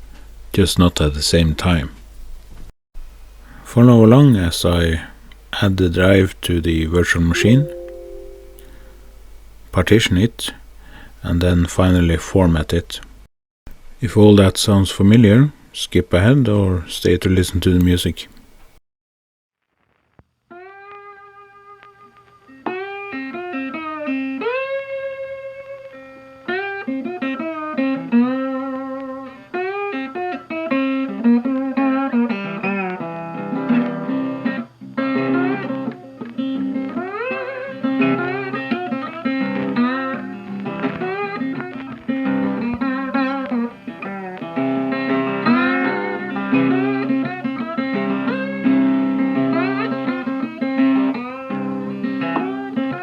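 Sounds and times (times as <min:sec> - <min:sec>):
bluesy slide guitar: 0:20.6 - 0:53.0.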